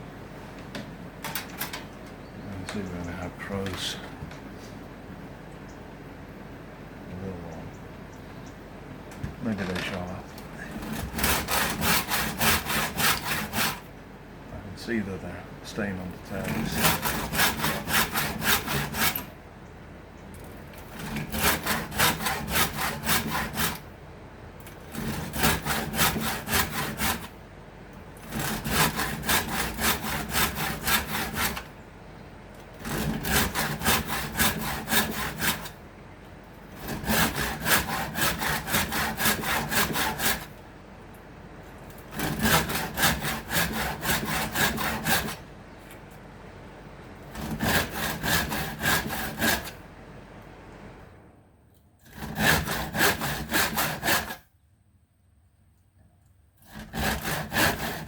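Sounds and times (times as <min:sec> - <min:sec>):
saw cutting wood: 0:09.4 - 0:13.9, 0:14.8 - 0:19.4, 0:20.7 - 0:23.9, 0:24.6 - 0:27.4, 0:28.2 - 0:31.7, 0:32.6 - 0:35.8, 0:36.7 - 0:40.6, 0:41.9 - 0:45.4, 0:47.2 - 0:49.8, 0:52.0 - 0:54.4, 0:56.6 - 0:58.0.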